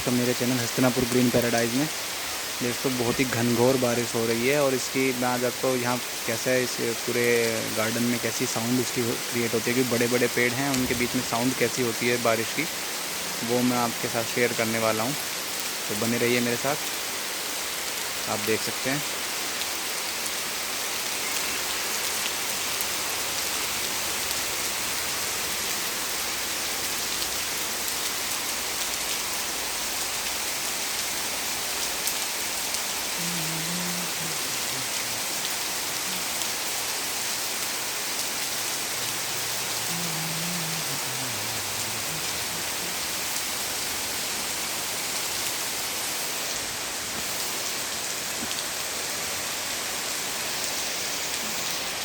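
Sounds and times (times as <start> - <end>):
heavy rain pouring: 0.0 - 52.0
faint low call: 39.0 - 43.4.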